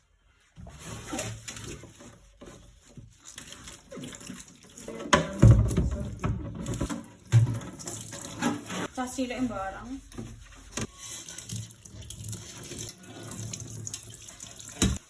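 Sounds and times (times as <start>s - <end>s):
water running and splashing: 0.8s - 15.0s
kitchen items knocking: 5.0s - 8.9s.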